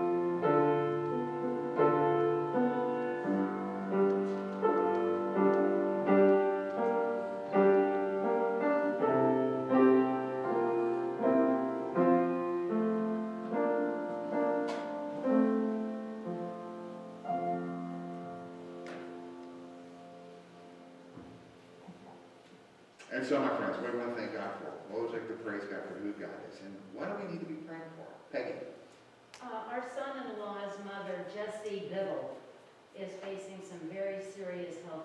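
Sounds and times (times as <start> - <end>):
piano playing slow chords: 0.0 - 22.7.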